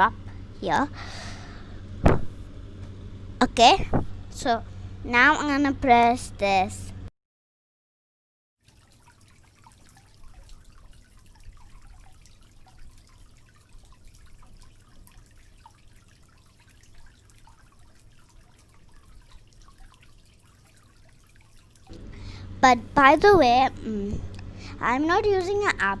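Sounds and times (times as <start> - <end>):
water dripping: 8.6 - 22.0.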